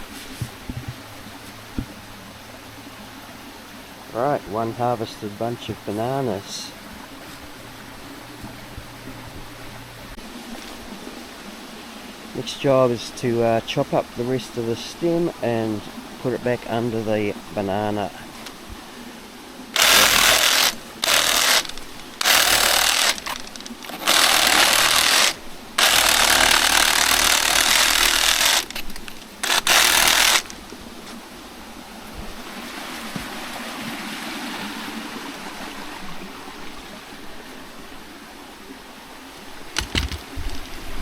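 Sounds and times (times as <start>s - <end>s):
reciprocating saw cutting: 19.8s - 30.8s
sharp knocks: 39.8s - 40.5s.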